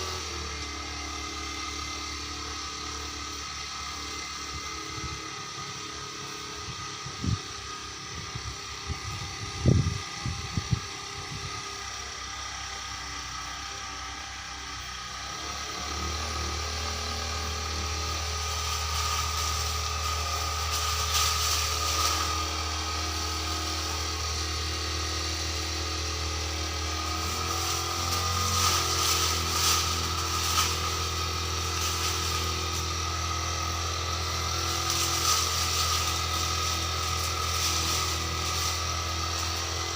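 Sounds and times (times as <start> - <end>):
brush cutter engine running: 0.0 - 39.9.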